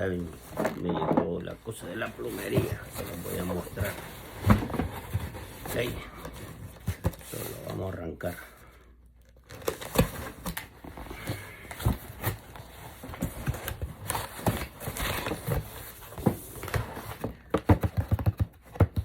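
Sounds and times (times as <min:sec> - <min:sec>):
packaging rustling: 0:00.0 - 0:07.9.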